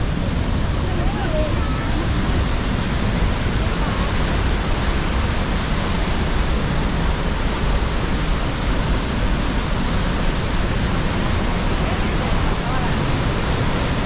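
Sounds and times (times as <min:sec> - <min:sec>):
roar of waterfall: 0:00.0 - 0:14.0.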